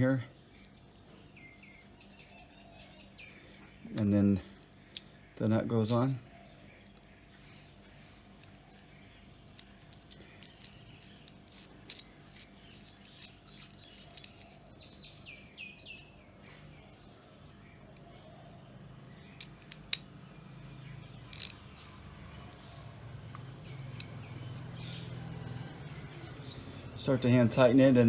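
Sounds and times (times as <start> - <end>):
bird chirping: 0.0 - 28.0
metal parts and tools clicking: 9.4 - 14.9, 21.2 - 22.8.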